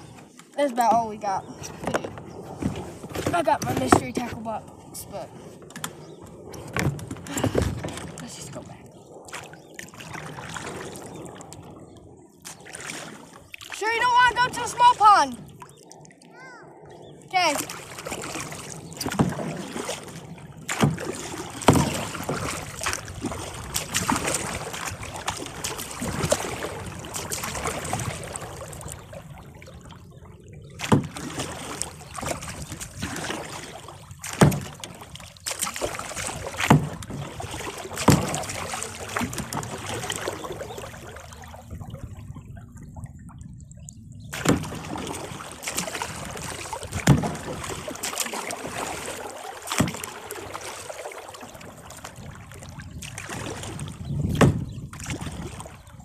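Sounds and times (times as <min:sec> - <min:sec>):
paddle splashing water: 0:00.0 - 0:56.0
sharp knocks: 0:54.3 - 0:54.7.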